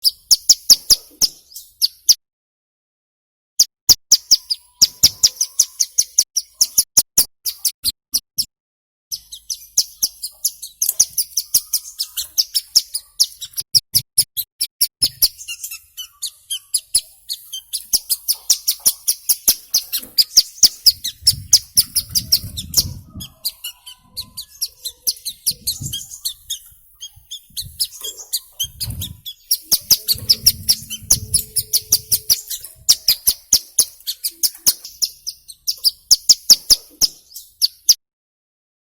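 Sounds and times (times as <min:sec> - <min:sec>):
bird rapid high chip notes: 0:14.4 - 0:36.7.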